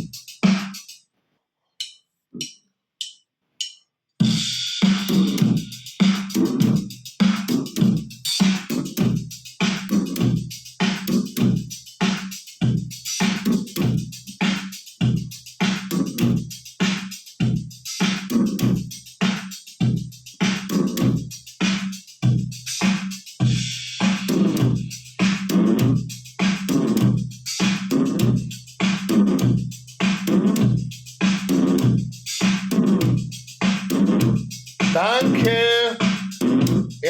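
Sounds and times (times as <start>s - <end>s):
machine-like beat: 31.5s - 37.0s.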